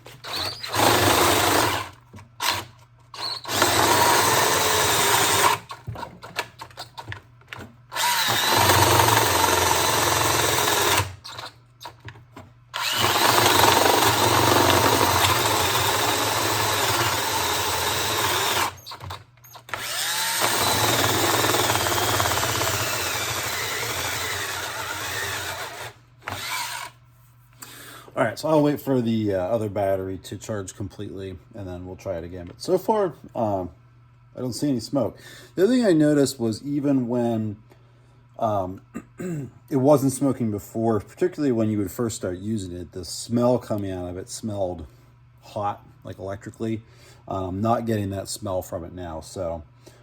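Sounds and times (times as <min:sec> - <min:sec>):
cordless drill boring through wood: 0:00.1 - 0:06.0, 0:07.9 - 0:12.0, 0:12.8 - 0:26.9.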